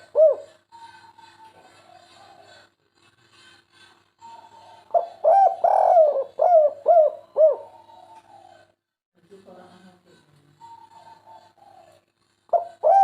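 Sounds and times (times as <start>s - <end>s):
dove cooing: 0.0s - 2.7s, 4.2s - 8.8s, 10.6s - 13.0s.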